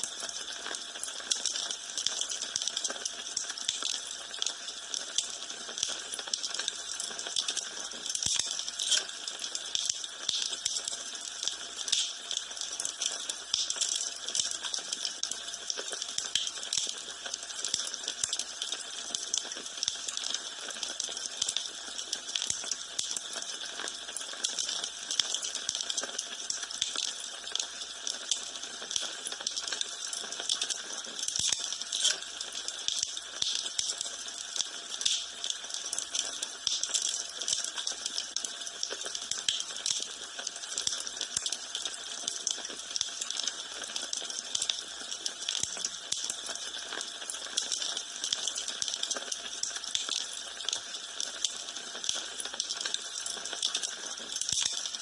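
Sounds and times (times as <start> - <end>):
wood fire crackling: 8.0 - 16.9, 26.0 - 40.2
fire popping: 35.0 - 35.2.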